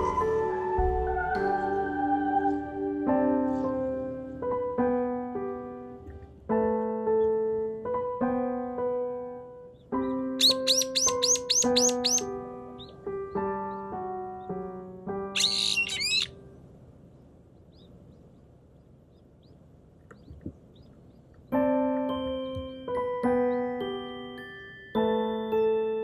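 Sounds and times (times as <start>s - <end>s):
gentle piano music: 0.0s - 19.6s, 20.2s - 26.0s
faint short bird chirps: 10.0s - 12.2s, 15.4s - 16.3s
loud harsh bird call: 10.0s - 13.0s, 15.3s - 16.4s.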